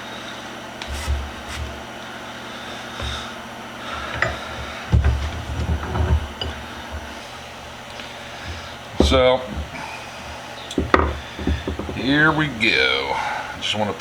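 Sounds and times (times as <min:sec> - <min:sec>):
hand tools knocking on workbench: 0:04.1 - 0:07.1, 0:08.5 - 0:09.8, 0:10.8 - 0:12.1.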